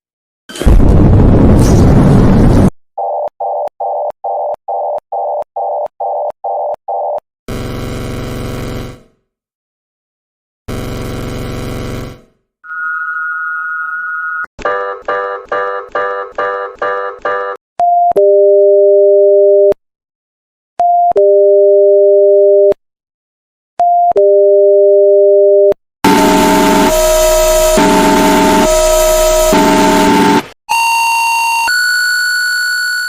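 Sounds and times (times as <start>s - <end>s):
harsh alternating alarm tone: 26.0s - 33.0s.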